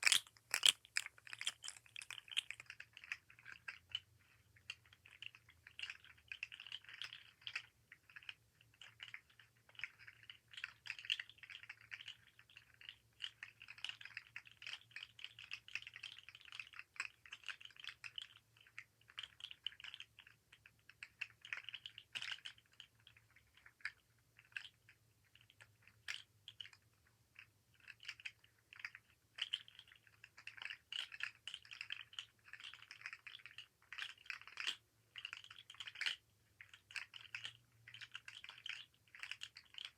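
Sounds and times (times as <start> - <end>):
toy segments clicking and rattling: 0.0 - 20.4, 28.8 - 39.9.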